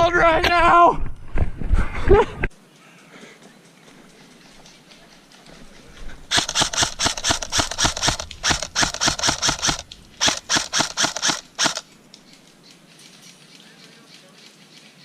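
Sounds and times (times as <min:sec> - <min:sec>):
airsoft gun firing: 0:06.3 - 0:11.9.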